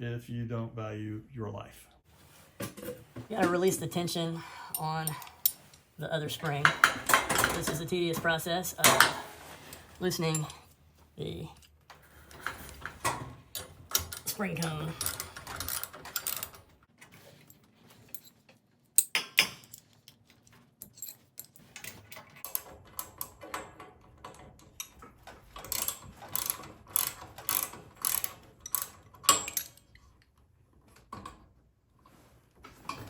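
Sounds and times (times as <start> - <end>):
hand tools clicking on metal: 3.4 - 5.8, 6.4 - 10.6, 11.6 - 16.6, 24.3 - 30.0.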